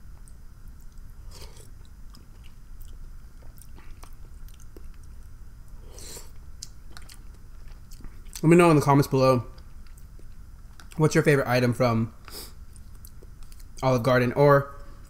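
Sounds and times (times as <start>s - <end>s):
person chewing food: 0.2s - 8.4s, 9.5s - 11.0s, 12.5s - 13.8s.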